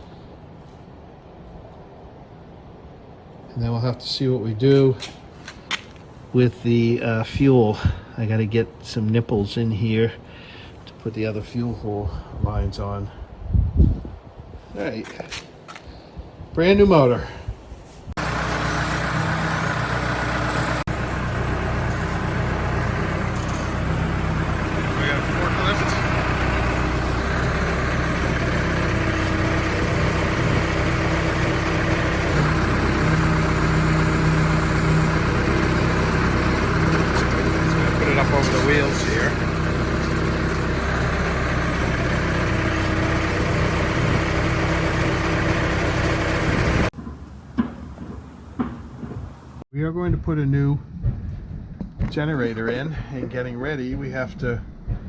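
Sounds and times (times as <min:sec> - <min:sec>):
engine running steadily: 0:18.2 - 0:47.0.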